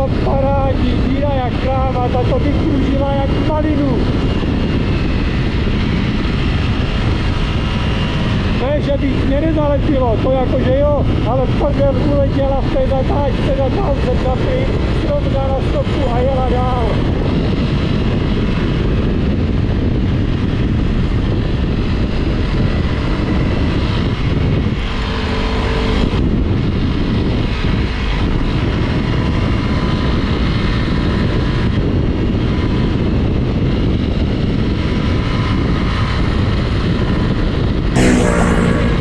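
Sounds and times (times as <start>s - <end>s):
motorcycle engine running: 38.0s - 39.0s.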